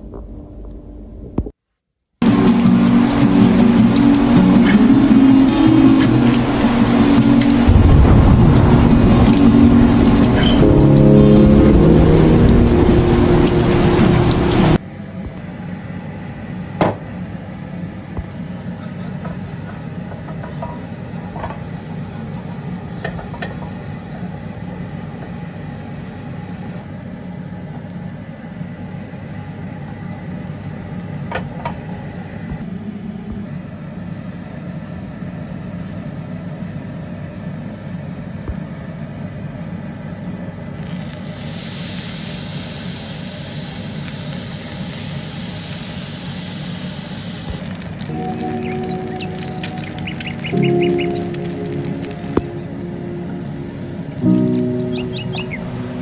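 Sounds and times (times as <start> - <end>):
low engine hum: 2.2 - 14.8, 47.7 - 56.0
rushing hiss: 40.8 - 52.4.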